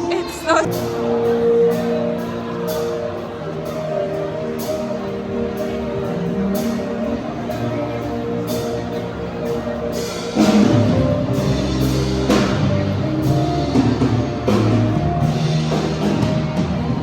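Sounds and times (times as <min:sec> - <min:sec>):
background music with drums: 0:00.6 - 0:17.0.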